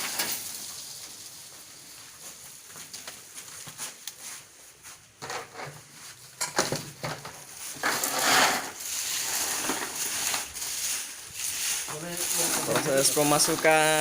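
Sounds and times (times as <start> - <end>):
dry crackers clattering: 0.0 - 3.4, 6.4 - 14.0.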